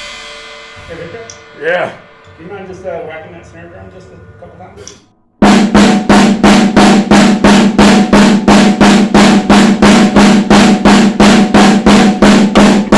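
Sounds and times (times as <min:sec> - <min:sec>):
snare drum hits: 0:05.4 - 0:12.9.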